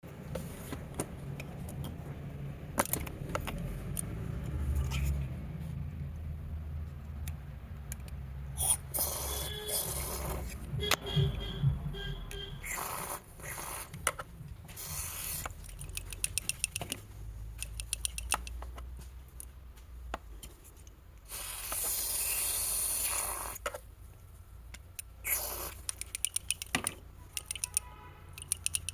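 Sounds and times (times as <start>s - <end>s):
aerosol cleaner spraying: 8.6s - 10.6s, 12.6s - 13.9s, 14.8s - 15.5s, 21.3s - 23.6s, 25.2s - 25.8s
small valve clicking rattles: 15.6s - 16.9s, 25.7s - 26.8s, 27.4s - 28.9s.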